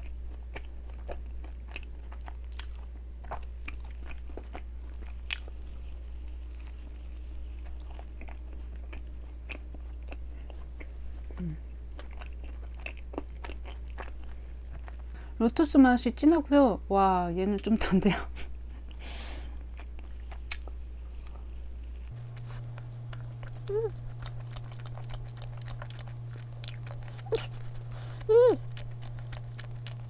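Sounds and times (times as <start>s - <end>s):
mouth chewing doughnut: 0.0s - 15.4s, 18.7s - 30.0s
low hum: 22.0s - 30.0s.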